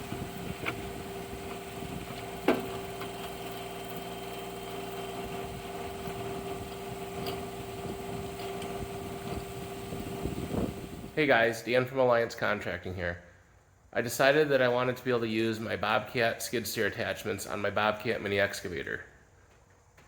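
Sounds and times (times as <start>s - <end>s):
engine idling: 0.0s - 11.2s.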